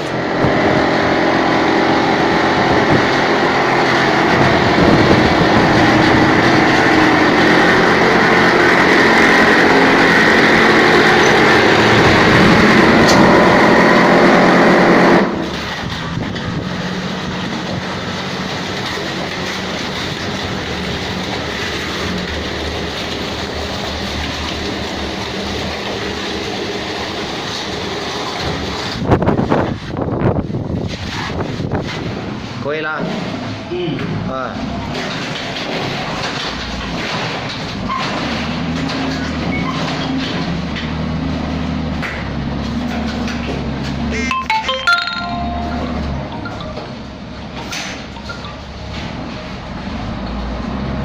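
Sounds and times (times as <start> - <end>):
plastering machine motor hum: 0.0 - 29.0.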